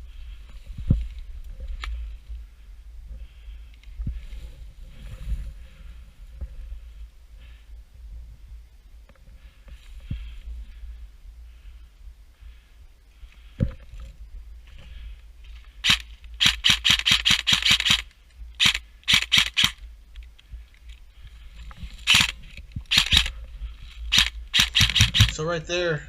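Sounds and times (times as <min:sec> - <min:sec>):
airsoft rifle firing: 0:15.8 - 0:19.8, 0:22.1 - 0:23.3, 0:24.1 - 0:25.5.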